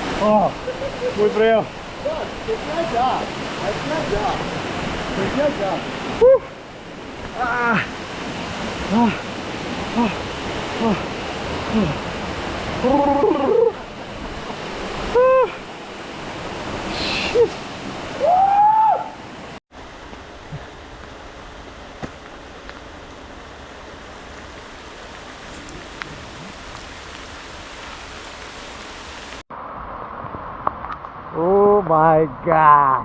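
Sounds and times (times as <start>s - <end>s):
waterfall rushing into pool: 0.0s - 31.4s
person yelping and whooping: 6.2s - 6.6s, 12.8s - 13.8s, 15.1s - 15.6s, 18.2s - 19.2s.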